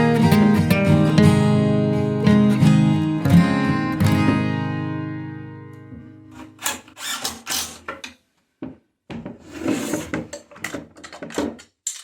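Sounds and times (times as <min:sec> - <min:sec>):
acoustic guitar chord: 0:00.0 - 0:06.2
wood pieces scraping and knocking: 0:09.1 - 0:12.0.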